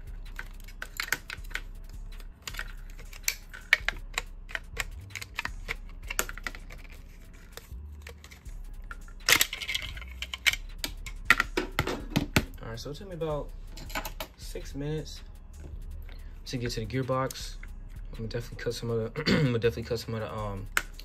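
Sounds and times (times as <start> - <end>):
parts clattering: 0.2 - 12.6, 13.7 - 14.4.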